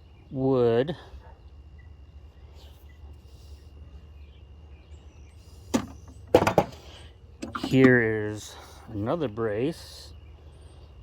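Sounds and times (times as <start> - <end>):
rattle of tools knocking: 5.7 - 6.8, 7.4 - 8.0.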